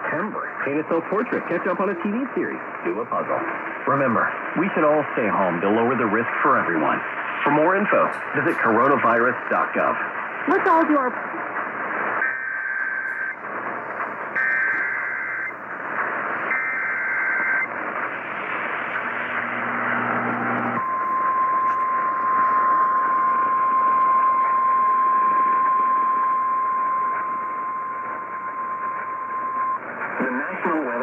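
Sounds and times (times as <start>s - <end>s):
radio hiss and static: 0.0s - 31.0s
steady single-pitch alert tone: 20.8s - 29.8s
two-tone data warbling: 20.8s - 29.9s.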